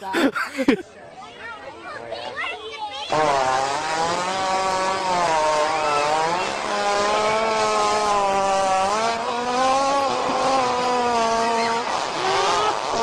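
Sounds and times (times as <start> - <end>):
animal fart buzzing: 3.1 - 13.0.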